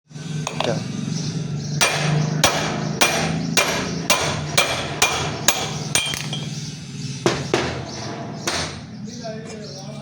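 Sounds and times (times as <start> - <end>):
hammer striking metal: 0.5 - 0.8, 1.8 - 6.6, 7.2 - 8.9.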